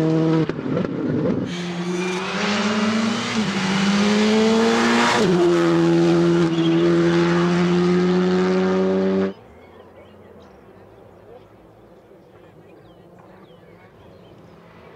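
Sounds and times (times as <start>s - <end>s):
car engine at high revs: 0.0s - 9.4s.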